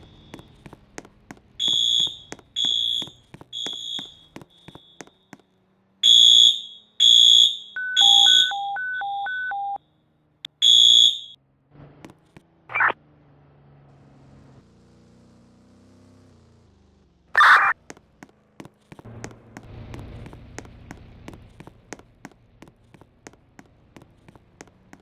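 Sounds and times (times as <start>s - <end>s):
fire alarm horn blasts: 1.6s - 5.2s, 6.0s - 9.8s, 10.6s - 11.4s, 17.4s - 17.8s.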